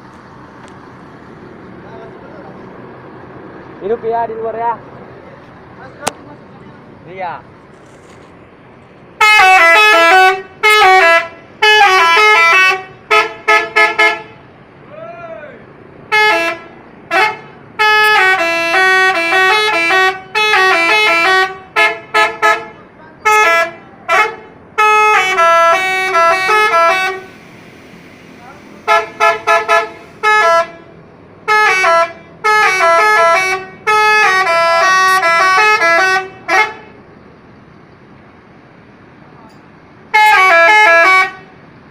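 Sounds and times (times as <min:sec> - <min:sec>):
bus musical horn tune: 0:09.2 - 0:14.5, 0:16.1 - 0:27.6, 0:28.8 - 0:37.0, 0:40.1 - 0:41.6
short horn toots: 0:28.8 - 0:30.8.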